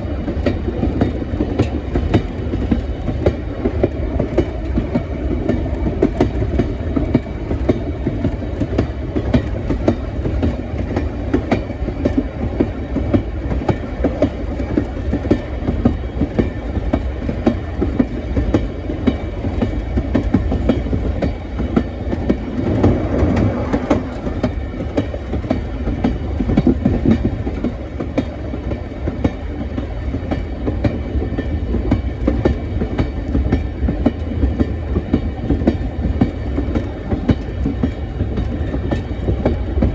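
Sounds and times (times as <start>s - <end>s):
train rumbling on rails: 0.0s - 39.9s
wheels clicking over track: 1.6s - 28.3s.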